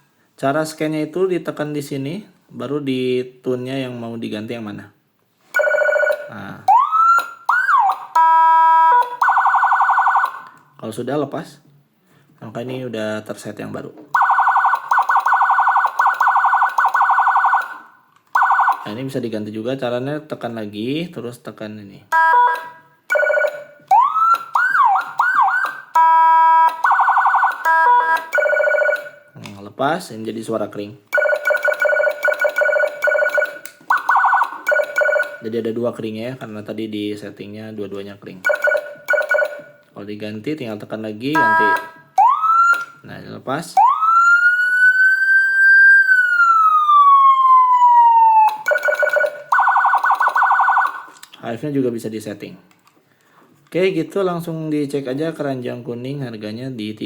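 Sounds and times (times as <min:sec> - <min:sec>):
electronic siren: 0:05.6 - 0:10.5, 0:14.2 - 0:19.0, 0:22.1 - 0:29.2, 0:31.2 - 0:35.4, 0:38.4 - 0:39.7, 0:41.4 - 0:43.0, 0:43.8 - 0:51.2.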